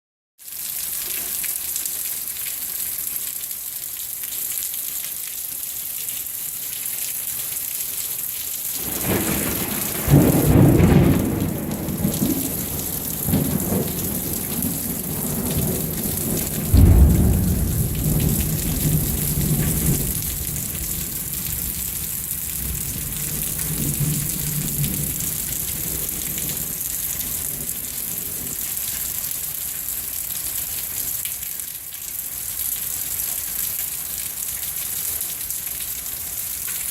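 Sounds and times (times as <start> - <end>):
pouring rain: 0.4 - 36.9
loud thunder claps: 8.8 - 26.7
thunder rumbling: 8.8 - 28.6.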